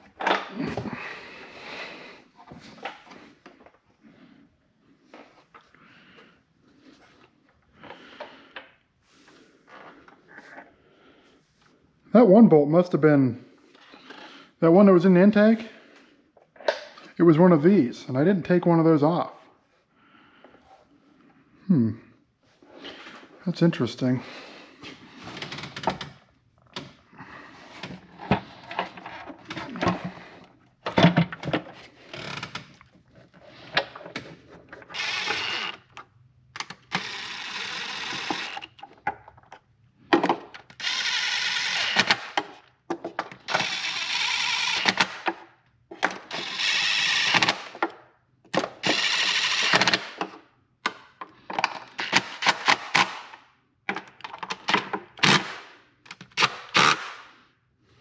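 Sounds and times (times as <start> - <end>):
power tool bursts: 34.9 - 35.8, 36.9 - 38.6, 40.8 - 42.4, 46.3 - 47.7, 48.8 - 50.1, 56.4 - 57.2.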